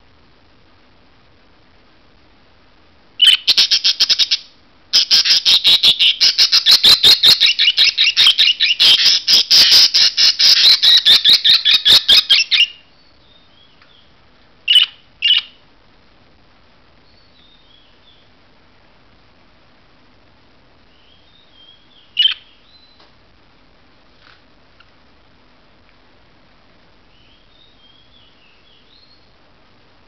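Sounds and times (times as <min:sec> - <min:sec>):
budgerigars chirping: 0:03.2 - 0:14.0, 0:14.7 - 0:15.6, 0:21.0 - 0:23.0.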